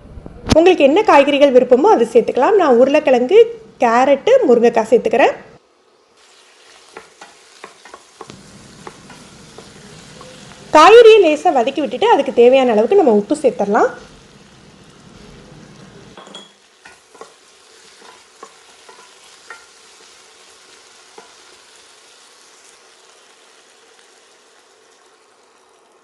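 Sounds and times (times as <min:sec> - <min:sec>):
vegetables sizzling in oil: 0:05.6 - 0:26.0.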